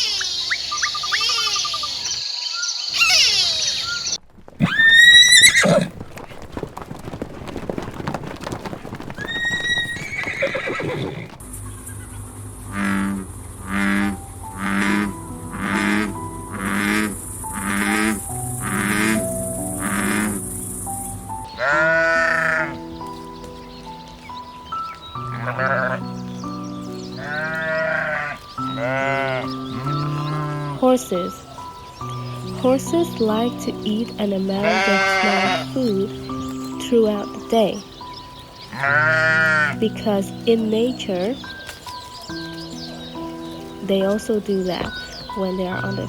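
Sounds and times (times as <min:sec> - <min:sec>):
horse hooves clattering: 0:03.0 - 0:20.2, 0:20.9 - 0:46.0
horse whinny: 0:04.6 - 0:06.0, 0:09.2 - 0:11.4
music with repeated notes: 0:13.7 - 0:46.0
sheep bleating: 0:21.6 - 0:22.8, 0:25.2 - 0:26.1, 0:27.2 - 0:30.8, 0:34.5 - 0:35.8, 0:38.7 - 0:39.8.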